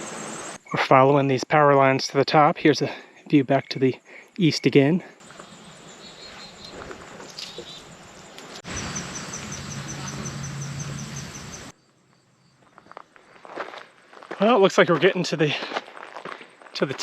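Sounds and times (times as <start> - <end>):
high insect chirping: 3.5 - 13.6.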